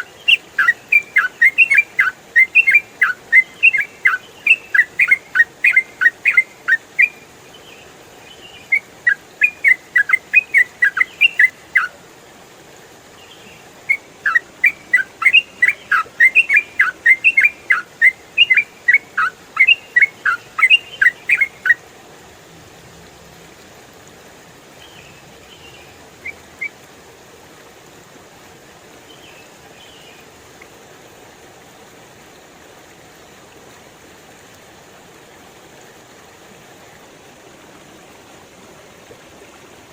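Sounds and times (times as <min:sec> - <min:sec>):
faint bird calls: 0:00.0 - 0:07.2, 0:08.3 - 0:11.9, 0:13.4 - 0:21.8
bird singing bubbly chirps: 0:00.0 - 0:12.0, 0:13.2 - 0:21.8, 0:24.8 - 0:26.7
stream water flowing: 0:00.0 - 0:39.9.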